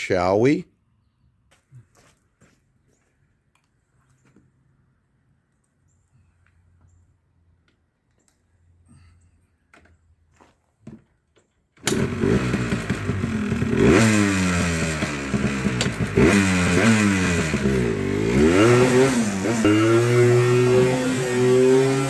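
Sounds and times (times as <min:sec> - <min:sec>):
two-stroke engine revving: 0:11.8 - 0:22.0.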